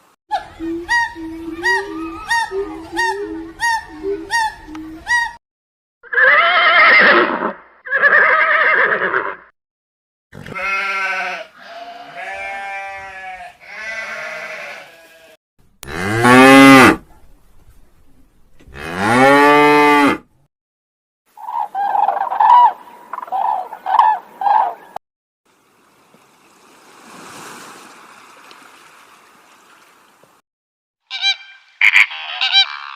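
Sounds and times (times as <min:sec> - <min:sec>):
livestock calling: 0:00.3 - 0:05.4, 0:10.4 - 0:15.3, 0:31.1 - 0:32.9.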